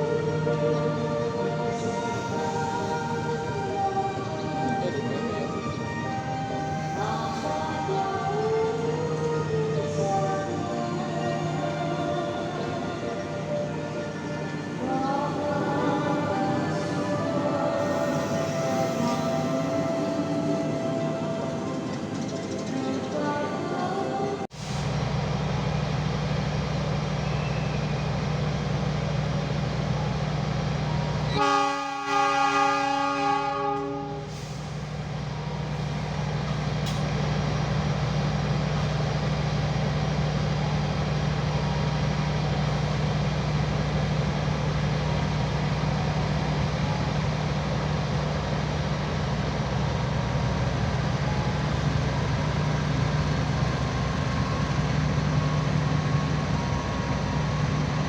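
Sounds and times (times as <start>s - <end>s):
train rumbling: 0.0s - 58.0s
train horn: 31.3s - 34.5s.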